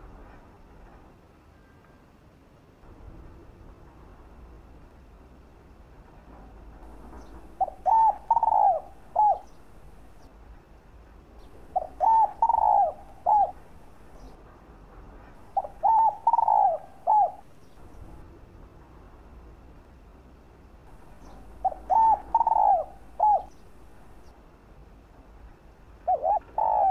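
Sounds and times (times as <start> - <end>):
dove cooing: 6.9 - 10.3, 11.4 - 14.3, 15.4 - 18.1, 20.9 - 24.3, 26.0 - 26.9.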